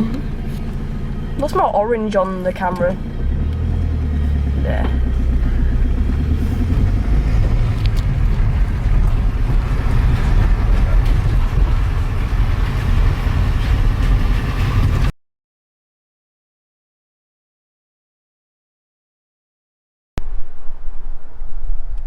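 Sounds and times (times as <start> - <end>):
vehicle rumbling on the move: 0.0 - 15.1, 20.2 - 22.0.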